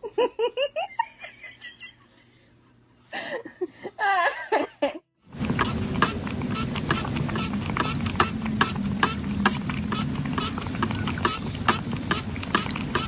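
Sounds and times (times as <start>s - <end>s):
person giggling: 0.0s - 2.0s, 3.2s - 5.0s.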